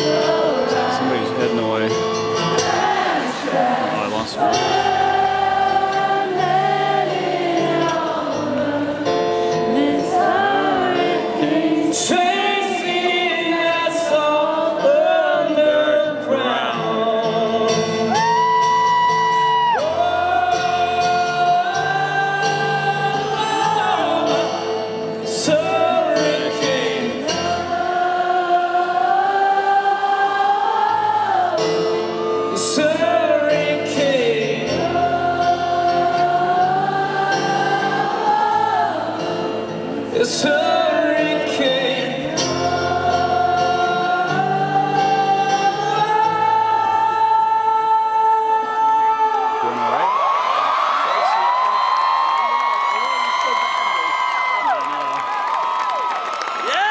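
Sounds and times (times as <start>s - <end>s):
live rock band music: 0.0s - 10.5s.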